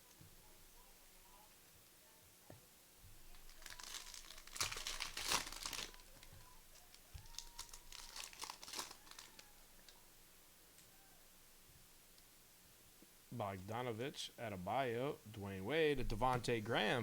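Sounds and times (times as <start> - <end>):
wrapper tearing and crinkling: 3.2 - 10.0.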